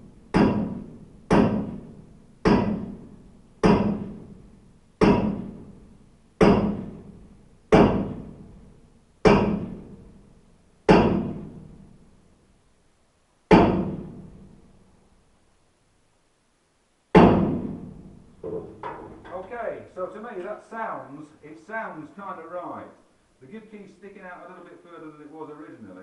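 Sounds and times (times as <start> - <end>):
hammer ringing on metal hub: 0.4 - 1.8, 3.6 - 4.1.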